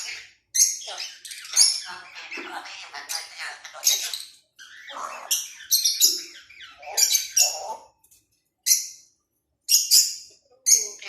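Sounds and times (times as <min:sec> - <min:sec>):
parrot chirping and calling: 0:00.0 - 0:11.0.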